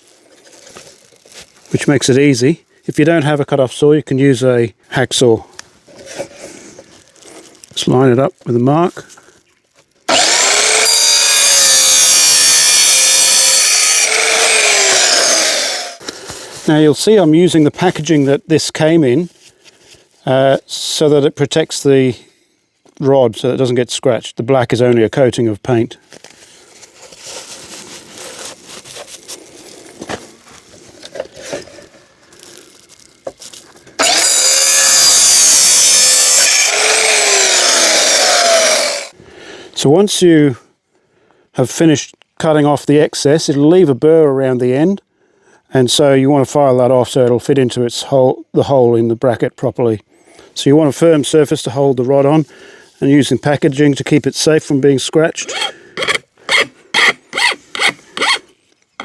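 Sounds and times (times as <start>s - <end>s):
cut-off saw cutting metal tube: 10.1s - 16.0s, 34.0s - 39.1s.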